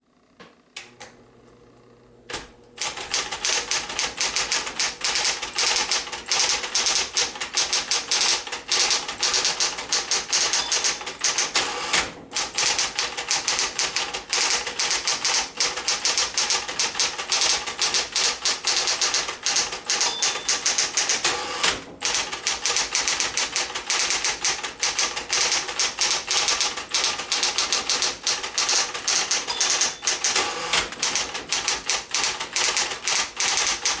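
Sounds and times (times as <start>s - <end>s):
rapid typewriter keystrokes: 2.8s - 34.0s
typewriter motor humming: 2.8s - 34.0s
typewriter bell ping: 2.9s - 11.5s, 14.3s - 21.4s, 25.3s - 31.2s.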